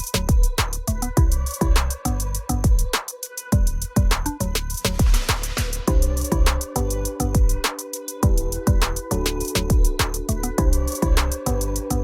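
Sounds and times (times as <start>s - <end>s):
electronic music with driving beat: 0.0s - 12.0s.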